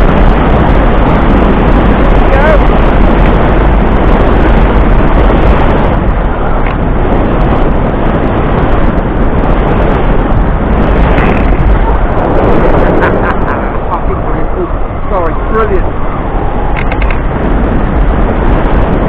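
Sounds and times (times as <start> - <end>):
low rumble: 0.0 - 19.0
wind buffeting microphone: 0.0 - 19.0.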